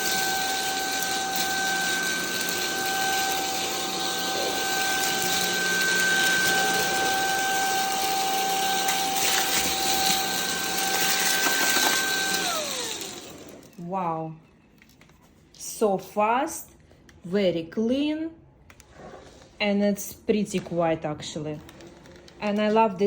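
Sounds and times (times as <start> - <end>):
coffee beans rattling in vacuum: 0.0 - 13.8
vacuum cleaner motor whine: 0.0 - 13.8.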